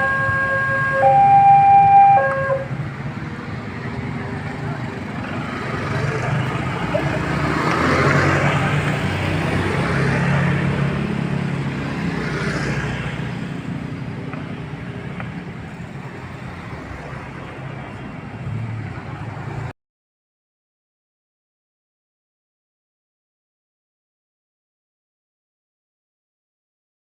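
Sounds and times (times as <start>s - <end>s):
cars and motorbikes passing: 0.0s - 19.7s.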